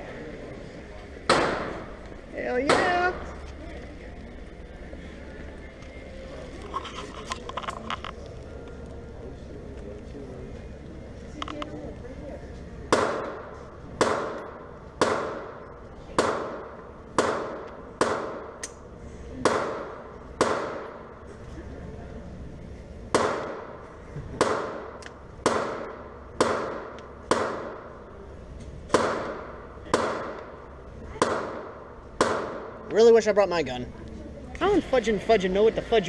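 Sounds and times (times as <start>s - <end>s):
gunshots echoing indoors: 1.3s - 2.0s, 12.9s - 18.6s, 19.4s - 21.2s, 23.1s - 23.8s, 24.4s - 28.0s, 28.9s - 30.6s, 31.2s - 32.9s.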